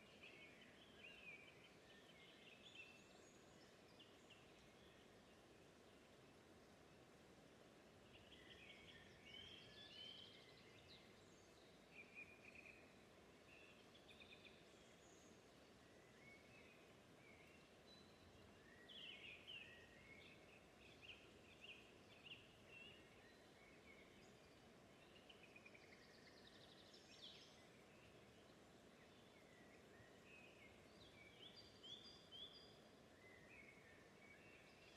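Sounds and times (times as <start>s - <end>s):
low background hiss: 0.0s - 34.9s.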